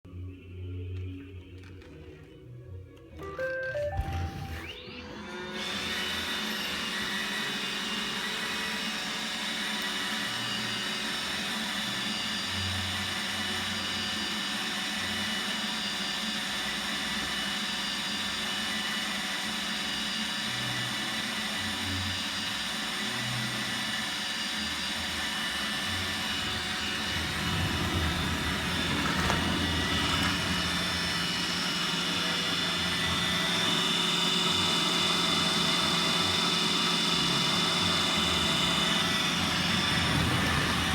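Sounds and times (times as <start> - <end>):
robot vacuum motor whine: 3.1 - 40.9.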